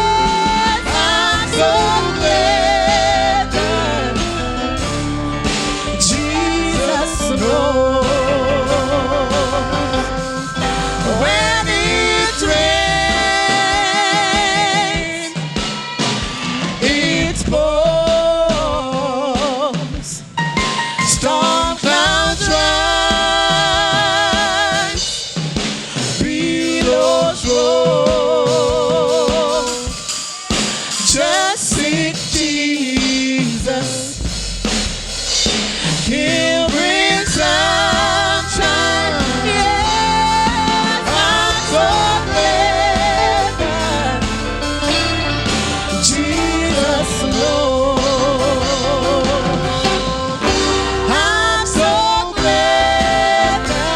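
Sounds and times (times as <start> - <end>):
gospel singer with vibrato: 0.0 - 34.4, 35.4 - 53.9
band with drum kit: 0.0 - 53.9.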